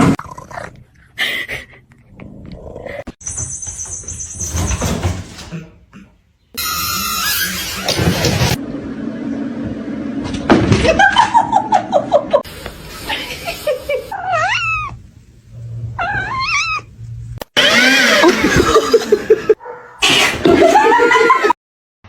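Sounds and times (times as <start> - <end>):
cats meowing: 14.1 - 15.0, 16.0 - 16.9.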